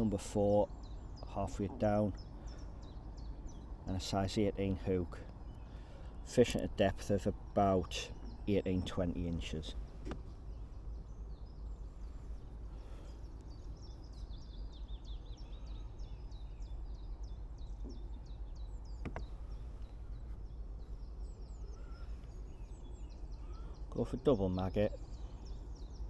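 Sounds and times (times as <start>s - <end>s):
small birds chirping: 0.0s - 26.0s
sharp click: 6.4s - 6.7s.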